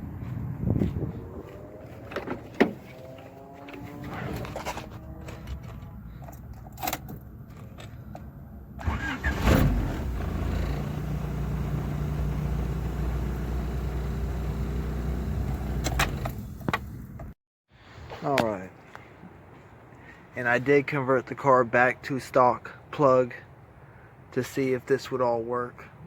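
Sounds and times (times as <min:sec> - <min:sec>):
car engine starting and idling: 0:01.2 - 0:17.4.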